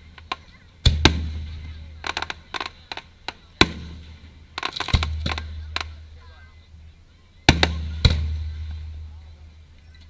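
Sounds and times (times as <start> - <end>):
fireworks crackling pops: 0.0 - 6.2, 7.5 - 9.1.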